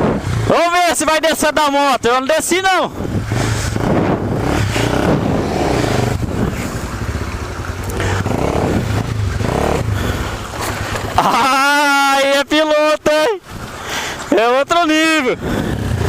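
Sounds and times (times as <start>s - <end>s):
motorcycle engine revving: 0.0s - 0.8s, 2.9s - 11.3s, 15.4s - 16.0s.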